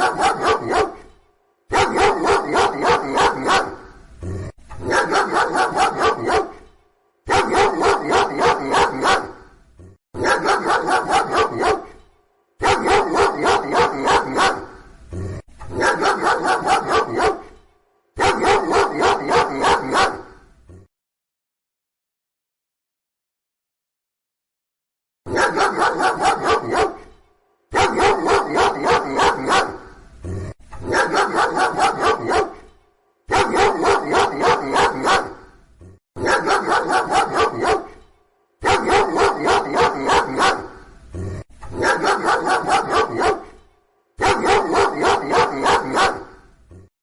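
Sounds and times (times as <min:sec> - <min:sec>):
dog barking: 0:00.0 - 0:04.0, 0:04.8 - 0:09.5, 0:10.2 - 0:14.9, 0:15.7 - 0:20.5, 0:25.3 - 0:30.0, 0:30.8 - 0:32.7, 0:33.3 - 0:35.6, 0:36.2 - 0:40.9, 0:41.7 - 0:46.9.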